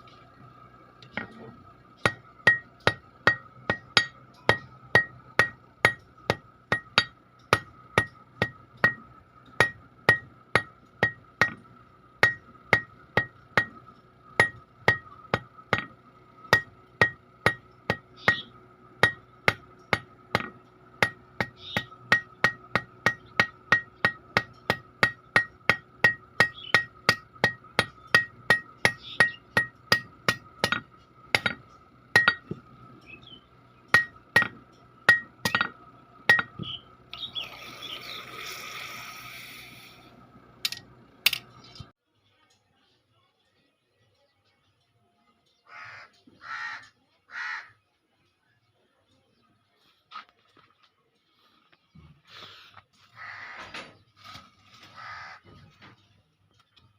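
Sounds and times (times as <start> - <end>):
hammer striking iron on anvil: 1.0 - 33.2, 33.8 - 36.8, 40.6 - 41.5.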